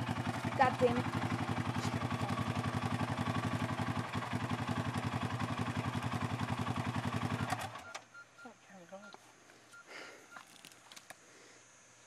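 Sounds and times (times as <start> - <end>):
atv engine running: 0.0 - 8.1.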